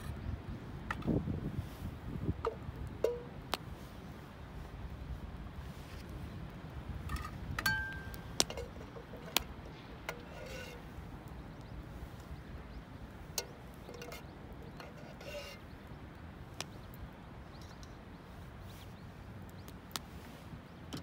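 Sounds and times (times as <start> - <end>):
ringing metal clink: 7.6 - 8.2.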